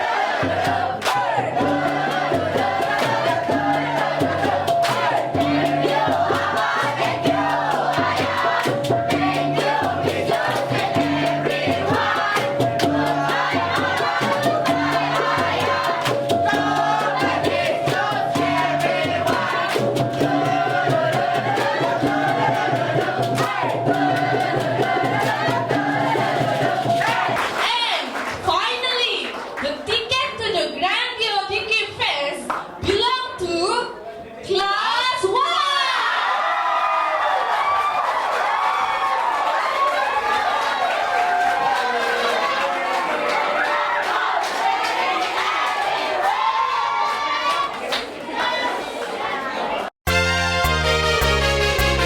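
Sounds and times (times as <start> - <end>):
chorus singing and chanting: 0.0 - 27.7, 39.7 - 52.0
music with low bass pattern: 50.1 - 52.0.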